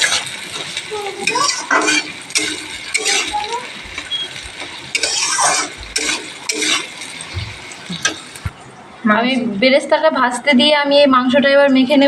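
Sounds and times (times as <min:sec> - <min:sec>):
spatula scraping pan: 0:00.0 - 0:08.5
onions frying in oil: 0:00.0 - 0:08.6.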